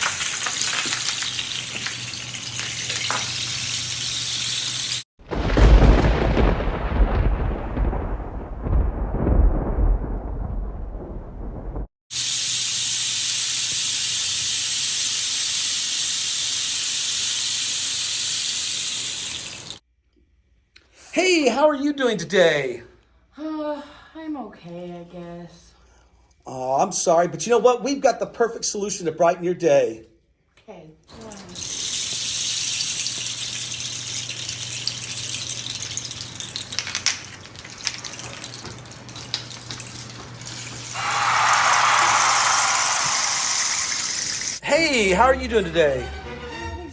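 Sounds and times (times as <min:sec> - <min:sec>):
rain stick pebbles trickling: 0:00.0 - 0:07.2, 0:12.1 - 0:19.8, 0:31.2 - 0:44.6.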